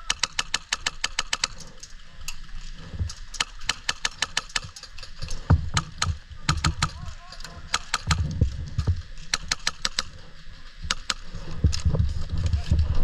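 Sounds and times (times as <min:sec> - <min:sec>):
airsoft guns firing: 0:00.0 - 0:01.7, 0:03.3 - 0:08.4, 0:09.2 - 0:10.2.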